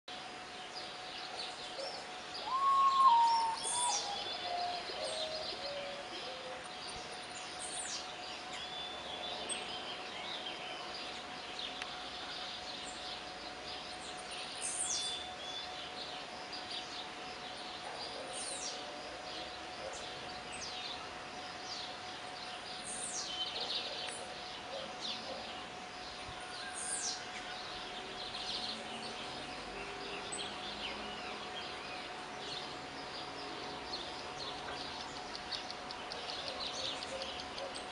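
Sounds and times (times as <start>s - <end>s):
faint hum: 0.1s - 37.9s
bird whistling descending notes: 2.4s - 5.4s.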